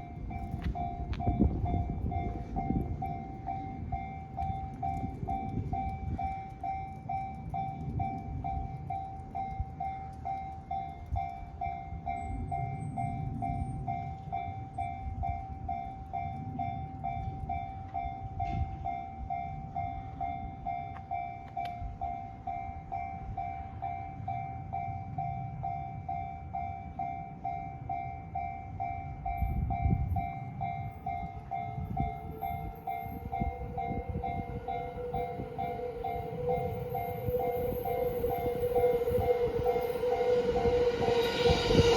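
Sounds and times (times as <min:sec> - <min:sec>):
train passing rumble: 0:00.0 - 0:41.9
level crossing bell ringing: 0:30.7 - 0:41.9.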